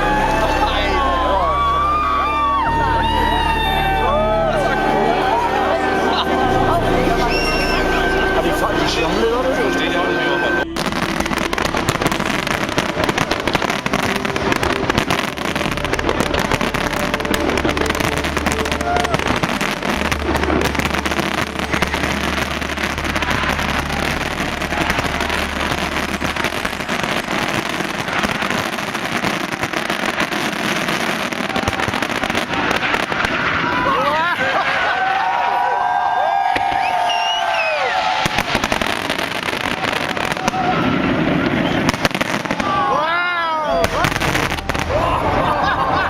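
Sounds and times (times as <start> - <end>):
low steady drone: 0.0 - 30.2
fireworks crackling and popping: 5.2 - 46.0.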